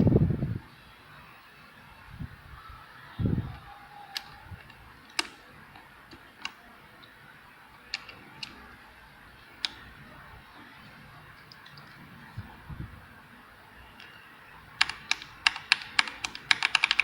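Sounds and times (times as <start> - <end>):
keyboard key clicks: 14.8 - 17.0.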